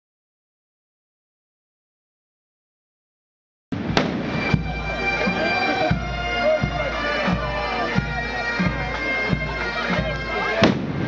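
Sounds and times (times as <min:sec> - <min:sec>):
sharp bang: 0:03.7 - 0:04.7
bass drum beating: 0:03.8 - 0:11.0
bagpipes playing slow tune: 0:04.0 - 0:11.0.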